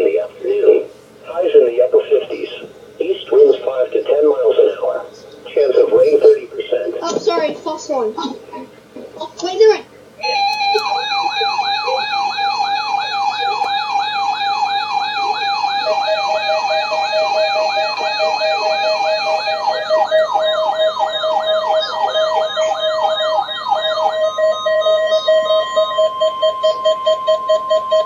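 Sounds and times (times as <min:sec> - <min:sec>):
electronic siren sweeping down: 0:10.2 - 0:28.0
pulsing beep: 0:10.2 - 0:28.0
steady high warning tone: 0:10.2 - 0:28.0.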